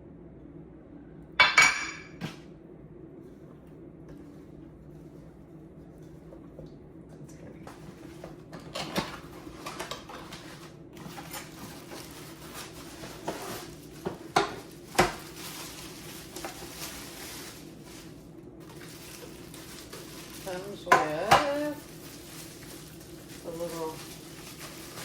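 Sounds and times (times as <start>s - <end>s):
steady low hum: 0.0s - 25.0s
cookware and utensils clinking: 1.4s - 2.2s, 12.5s - 15.2s, 19.9s - 22.7s.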